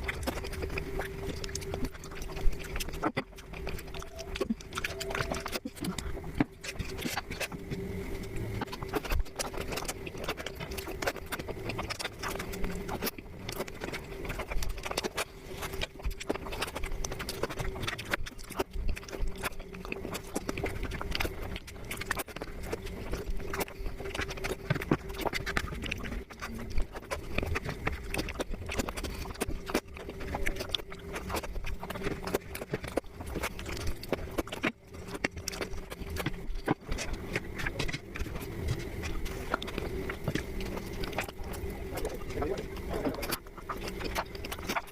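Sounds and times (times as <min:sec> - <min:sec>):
chewing and mouth smacks: 0:00.0 - 0:44.9
steady low hum: 0:00.0 - 0:44.9.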